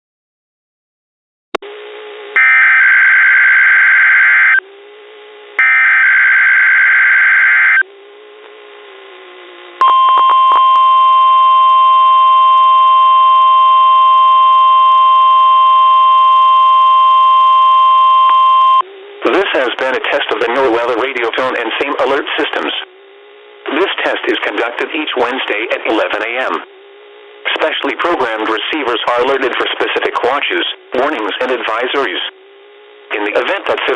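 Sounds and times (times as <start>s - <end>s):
harsh buzzing data bursts: 1.7s - 33.9s
steady high alarm tone: 2.4s - 4.6s, 5.6s - 7.8s, 9.8s - 18.9s.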